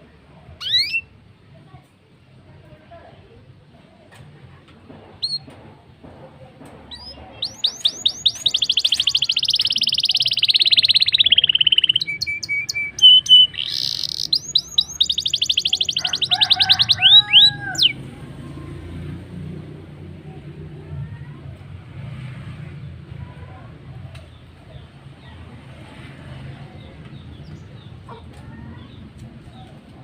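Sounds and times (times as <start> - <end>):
canary singing trills: 0.6 - 1.2, 6.9 - 18.0.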